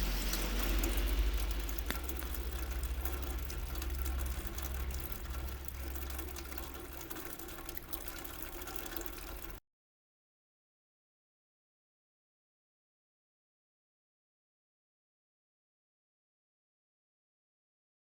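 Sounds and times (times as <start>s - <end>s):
drop ticks: 0.0s - 9.6s
low rumble of city traffic: 0.0s - 9.6s
steady rain: 0.0s - 9.6s
water splashing and trickling: 0.0s - 9.6s.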